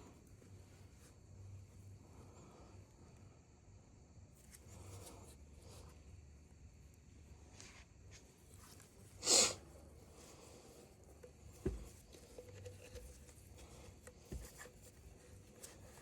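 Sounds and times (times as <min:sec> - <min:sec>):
short sharp hiss: 0:09.2 - 0:09.6
dull knocks on workbench: 0:11.6 - 0:12.0.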